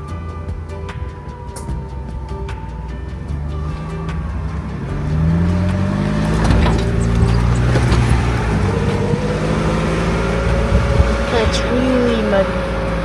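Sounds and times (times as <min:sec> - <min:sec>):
off-road vehicle engine: 0:00.0 - 0:13.0
vehicle knocks and rattles: 0:01.6 - 0:11.7.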